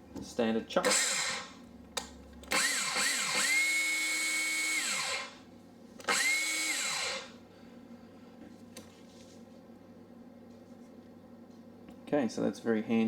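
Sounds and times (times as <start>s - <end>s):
cordless hammer drill whining: 0.8s - 1.5s, 2.5s - 5.4s, 6.0s - 7.3s.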